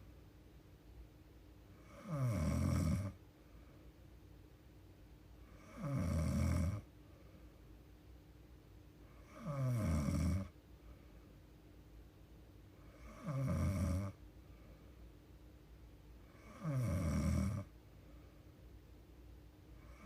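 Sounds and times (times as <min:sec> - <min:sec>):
woman snoring: 0:01.8 - 0:03.2, 0:05.5 - 0:06.9, 0:09.2 - 0:10.5, 0:12.9 - 0:14.2, 0:16.3 - 0:17.7.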